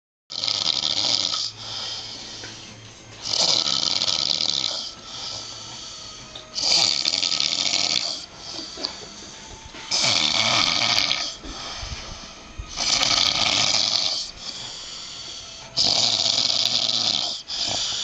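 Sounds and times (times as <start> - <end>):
man snoring loudly: 0.3 - 2.3, 3.2 - 5.6, 6.5 - 8.7, 9.9 - 11.6, 12.7 - 18.0
quiet breaths: 4.9 - 6.4.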